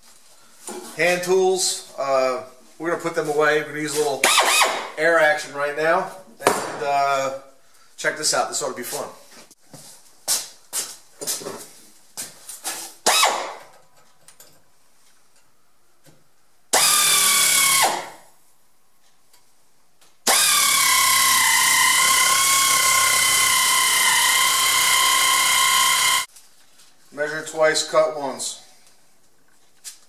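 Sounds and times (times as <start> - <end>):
air cut-off tool whining: 4.2 - 4.9, 13.1 - 13.6, 16.7 - 18.2, 20.3 - 26.3.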